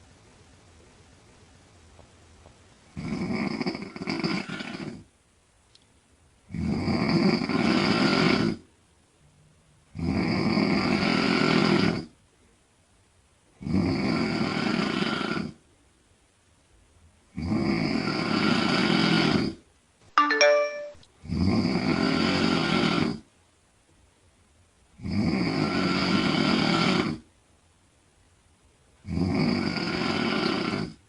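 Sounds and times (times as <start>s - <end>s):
woman snoring loudly: 3.0s - 5.1s, 6.5s - 8.6s, 10.0s - 12.1s, 13.6s - 15.6s, 17.4s - 19.6s, 21.3s - 23.2s, 25.0s - 27.2s, 29.0s - 31.0s
electronic chime: 20.2s - 21.0s.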